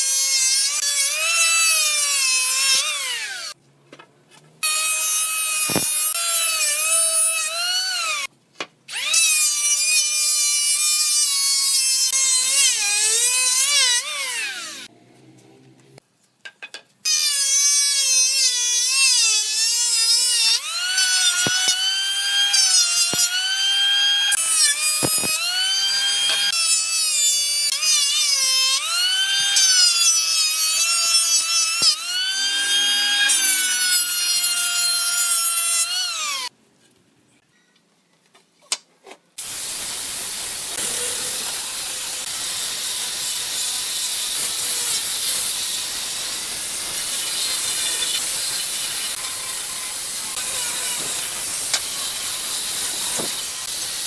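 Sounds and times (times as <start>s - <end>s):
power tool motor whining: 4.6s - 8.3s, 17.1s - 36.5s, 39.4s - 54.0s.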